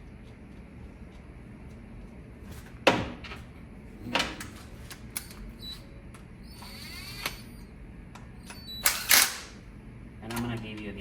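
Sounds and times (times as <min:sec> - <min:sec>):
brief whir: 0:08.5 - 0:09.5.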